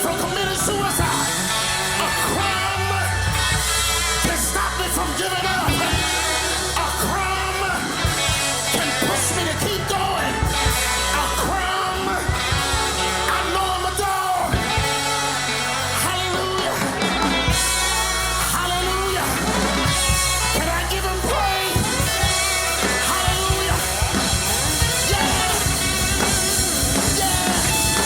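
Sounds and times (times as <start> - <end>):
gospel band playing: 0.0 - 28.0
people singing: 0.0 - 28.0
sustained bass line: 0.0 - 28.0.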